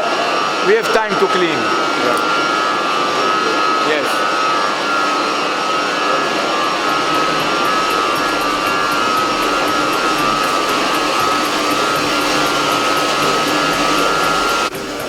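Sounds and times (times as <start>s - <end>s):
pump machinery running: 0.0s - 15.0s
steady machine whine: 0.0s - 15.0s.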